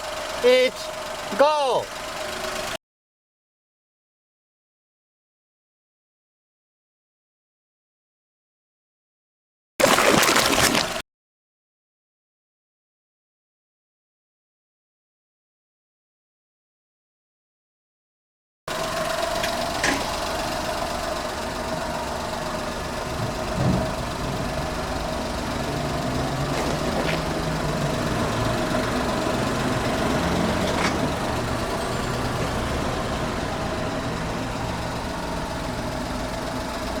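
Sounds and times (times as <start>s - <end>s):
car engine idling: 0.0s - 2.8s, 18.7s - 37.0s
dull thump: 23.2s - 24.1s.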